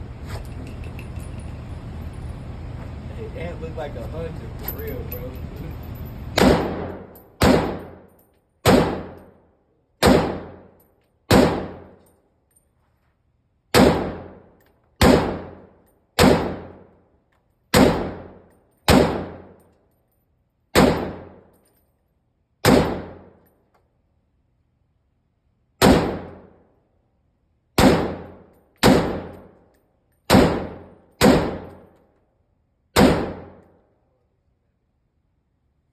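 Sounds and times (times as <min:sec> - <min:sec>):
rifle shots echoing: 0:06.4 - 0:09.3, 0:10.0 - 0:10.7, 0:11.3 - 0:12.0, 0:13.7 - 0:14.4, 0:15.0 - 0:15.6, 0:16.2 - 0:16.8, 0:17.7 - 0:19.6, 0:20.8 - 0:21.5, 0:22.6 - 0:23.4, 0:25.8 - 0:26.6, 0:27.8 - 0:29.5, 0:30.3 - 0:31.9, 0:33.0 - 0:33.6.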